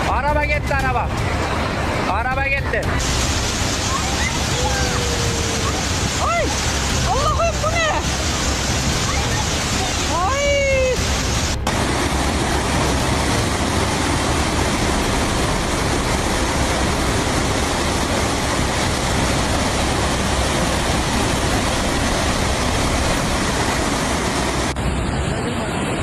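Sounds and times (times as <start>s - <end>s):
floodwater rushing: 0.0s - 26.0s.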